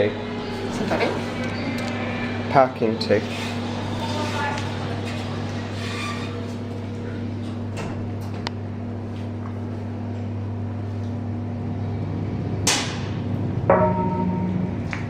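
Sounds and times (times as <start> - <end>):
lift car humming: 0.0 - 15.0.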